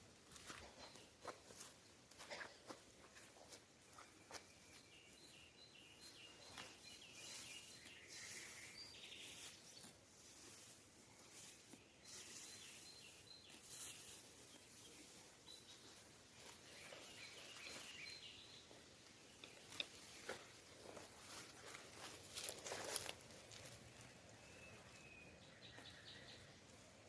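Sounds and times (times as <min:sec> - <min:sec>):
bird chirping: 0:03.8 - 0:10.0, 0:11.4 - 0:26.8.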